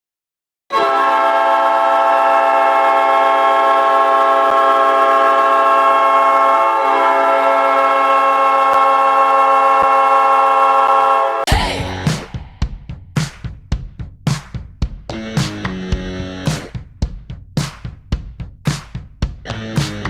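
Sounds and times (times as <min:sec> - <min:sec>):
hockey goal horn blast: 0:00.7 - 0:11.5.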